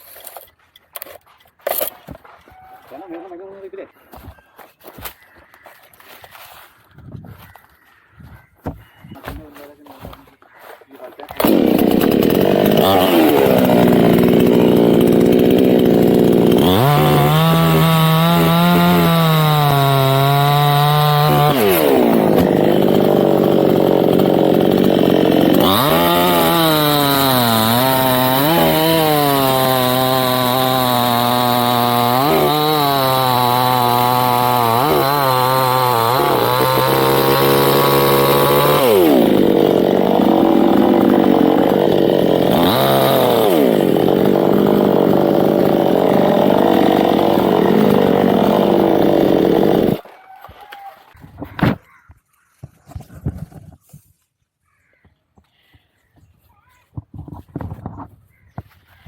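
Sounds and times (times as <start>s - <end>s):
chainsaw cutting wood: 0.0s - 2.4s, 11.3s - 50.1s.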